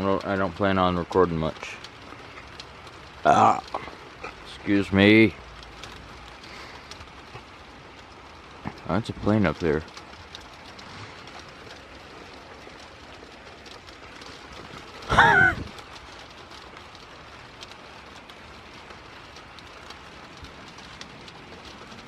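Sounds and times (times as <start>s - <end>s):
wind noise: 14.6s - 15.8s
short cry: 15.1s - 15.7s.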